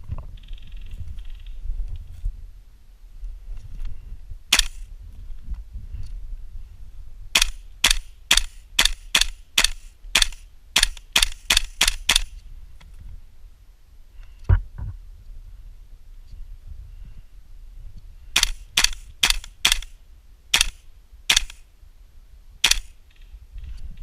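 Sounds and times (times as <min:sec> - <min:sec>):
airsoft gun shots: 0:04.5 - 0:04.9, 0:07.3 - 0:12.3, 0:18.4 - 0:19.9, 0:20.5 - 0:21.6, 0:22.6 - 0:23.0.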